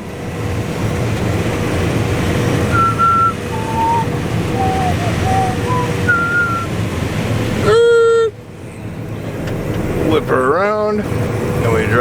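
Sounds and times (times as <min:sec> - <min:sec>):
combine harvester running: 0:00.0 - 0:12.0
short high notes: 0:02.8 - 0:06.7.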